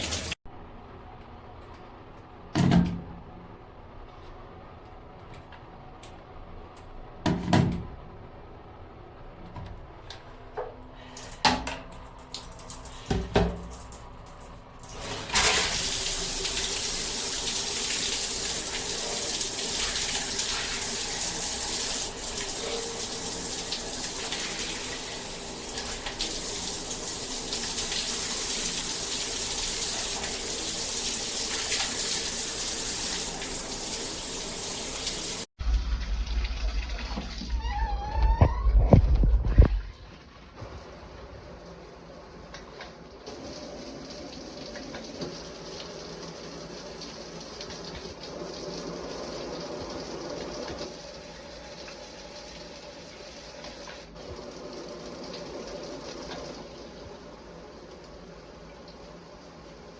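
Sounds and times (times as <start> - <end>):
shower head spraying water: 0.0 - 0.4.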